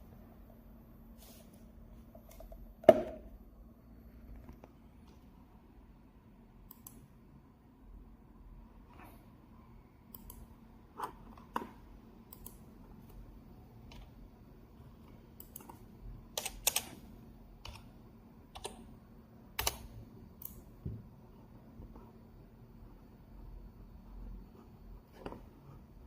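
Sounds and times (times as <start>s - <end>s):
faint steady hum: 0.0s - 26.0s
computer keyboard keystrokes: 15.4s - 17.0s, 18.5s - 18.8s, 19.6s - 20.6s.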